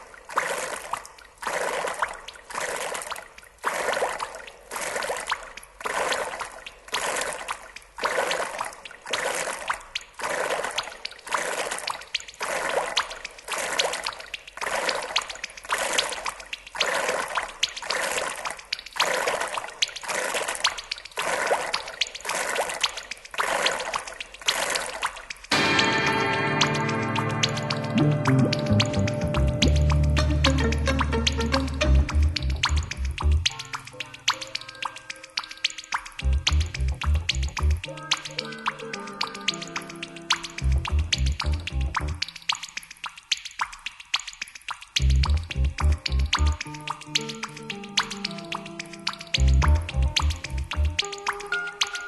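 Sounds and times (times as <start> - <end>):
water splashing rhythmically: 0.0 - 52.0.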